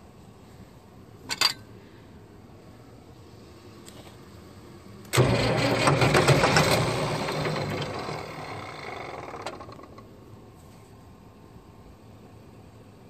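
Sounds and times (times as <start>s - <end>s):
tractor diesel engine cranking: 5.1s - 10.1s.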